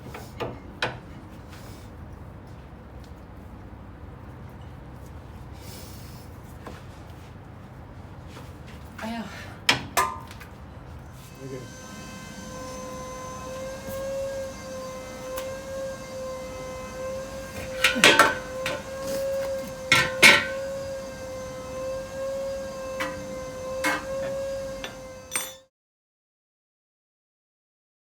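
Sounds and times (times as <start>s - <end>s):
high-pitched hum: 11.2s - 25.6s
hand tools clanking on metal: 11.6s - 25.6s.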